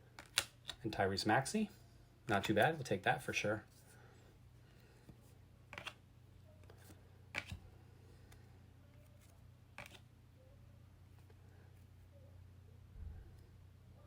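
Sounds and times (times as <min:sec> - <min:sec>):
trading cards rustling: 0:05.0 - 0:06.0, 0:06.6 - 0:07.6, 0:08.2 - 0:10.1.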